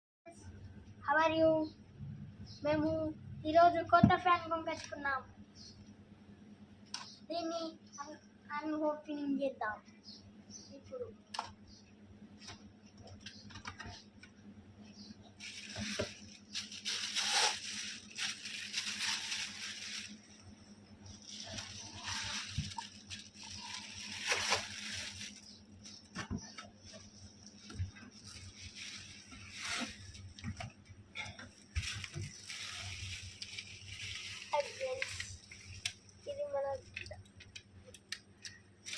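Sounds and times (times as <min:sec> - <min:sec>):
packaging rustling and crinkling: 0:15.4 - 0:37.6.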